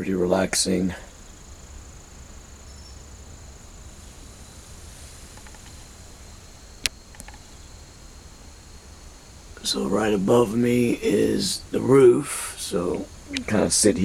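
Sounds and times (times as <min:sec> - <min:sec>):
insects chirring: 0:00.0 - 0:14.0
low outdoor rumble: 0:00.0 - 0:14.0
sharp click: 0:06.8 - 0:07.4.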